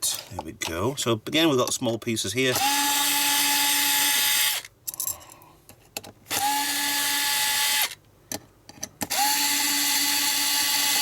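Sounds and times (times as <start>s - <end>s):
electric screwdriver whining: 2.6s - 4.7s, 6.3s - 8.0s, 9.1s - 11.0s.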